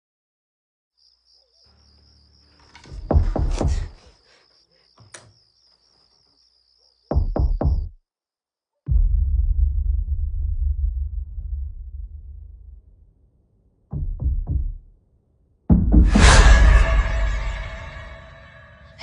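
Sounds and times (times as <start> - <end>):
knocking on wood: 2.9 - 4.0, 7.1 - 7.9
heavy thuds: 2.9 - 4.1, 15.7 - 18.2.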